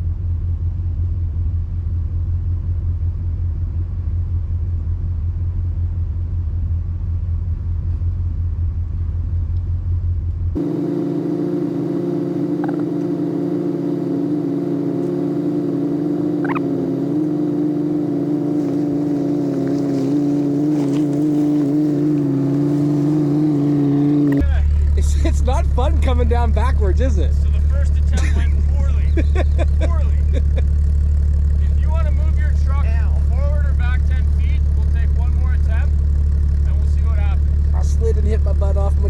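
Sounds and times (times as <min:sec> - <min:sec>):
off-road vehicle engines rumbling: 0:00.0 - 0:39.0
rising squeak: 0:12.6 - 0:13.0, 0:16.4 - 0:16.7.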